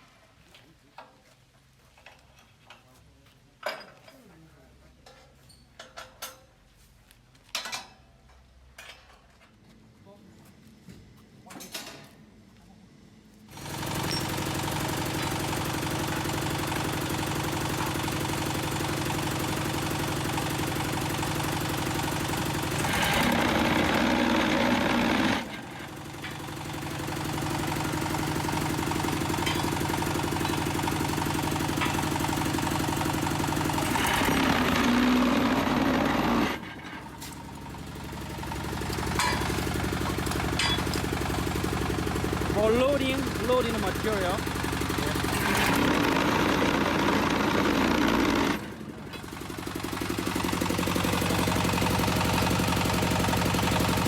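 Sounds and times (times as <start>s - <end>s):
diesel engine running: 13.5s - 54.0s.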